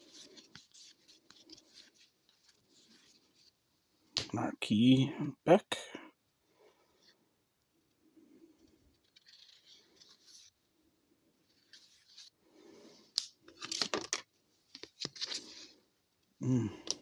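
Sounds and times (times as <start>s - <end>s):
cards sliding and rustling: 0.0s - 3.6s, 8.7s - 10.6s, 11.5s - 15.8s
wrapper crinkling and scraping: 13.4s - 15.8s.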